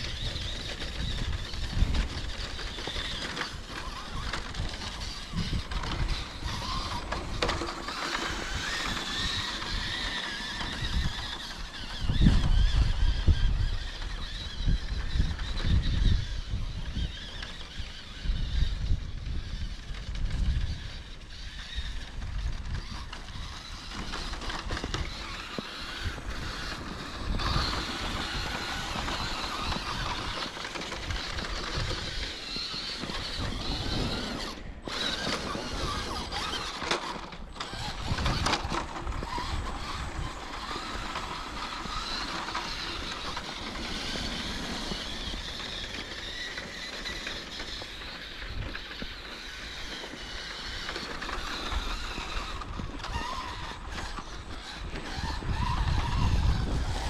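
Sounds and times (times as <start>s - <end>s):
toy truck motor whining: 0.0s - 57.0s.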